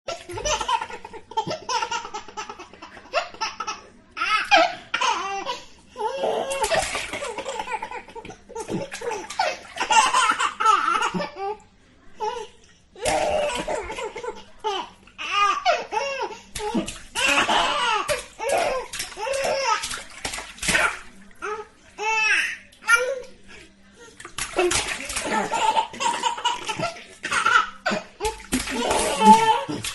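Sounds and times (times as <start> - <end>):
water splashing in a bath: 0.1 - 29.9
baby laughing: 25.0 - 29.9.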